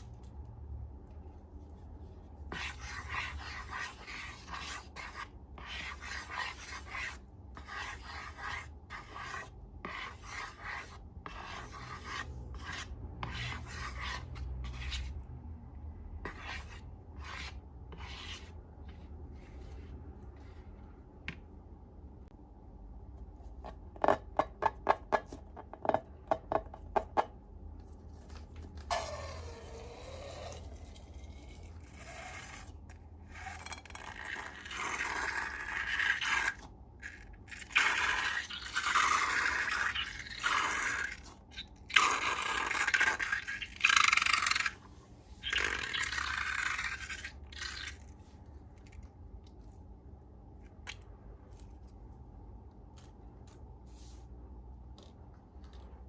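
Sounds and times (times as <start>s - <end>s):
slime squishing and scraping: 1.6s - 15.2s, 16.3s - 20.7s, 27.8s - 49.8s.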